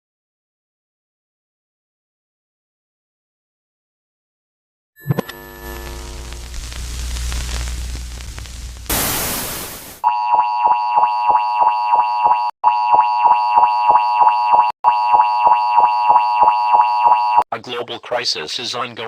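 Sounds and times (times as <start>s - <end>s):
low rumbling static: 5.3s - 10.0s
loud hiss burst: 6.8s - 10.0s
pulsing emergency alert tone: 10.0s - 17.4s.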